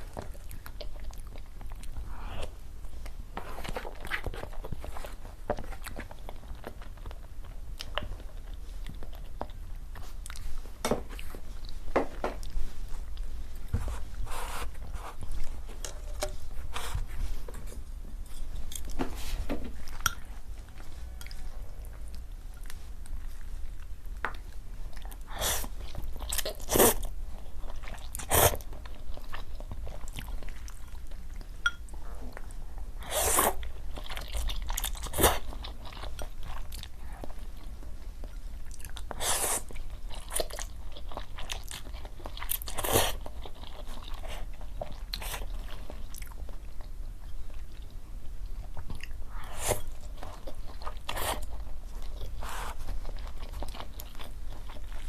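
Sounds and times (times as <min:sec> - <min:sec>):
person chewing crunchy food: 0:19.8 - 0:55.0.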